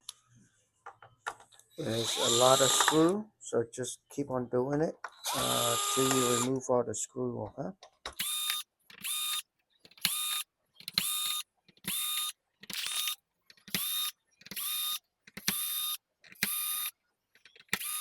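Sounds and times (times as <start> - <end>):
electric screwdriver whining: 2.0 - 3.1, 5.2 - 6.5, 8.2 - 9.4, 10.0 - 16.9, 17.6 - 18.0.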